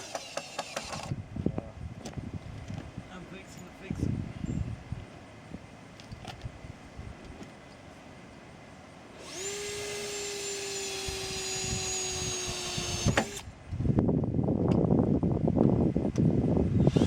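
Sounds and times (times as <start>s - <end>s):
drill driving screws into wood: 0.0s - 1.2s, 9.2s - 13.5s, 16.8s - 17.0s
power drill whining: 0.0s - 1.2s, 9.2s - 13.5s, 16.8s - 17.0s.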